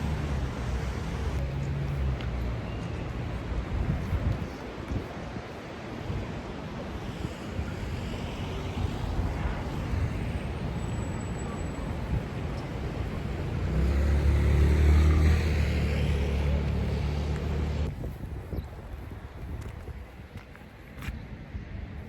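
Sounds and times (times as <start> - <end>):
road traffic noise: 0.0 - 22.0
vehicle engine low hum: 9.0 - 18.0.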